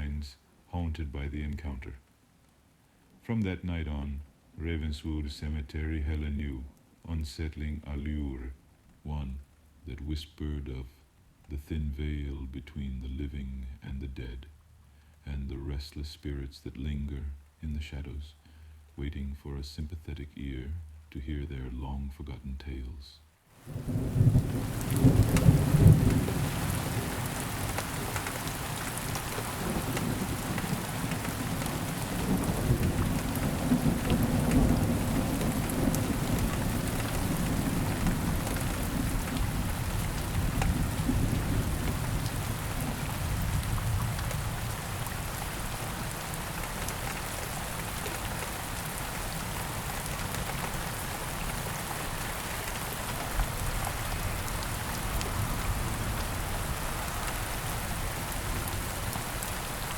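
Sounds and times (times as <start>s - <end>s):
steady rain falling: 0.0s - 59.9s
low rumble of thunder: 23.7s - 51.6s, 52.9s - 59.9s.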